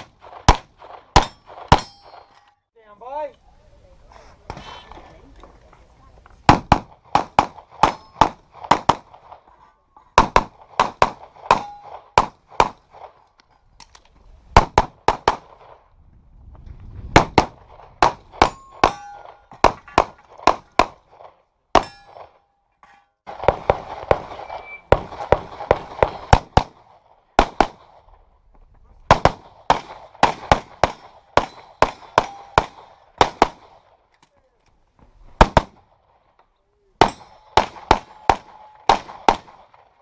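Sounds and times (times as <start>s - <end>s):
steel target metallic ring: 1.2s - 2.5s, 18.5s - 19.5s, 21.8s - 23.2s.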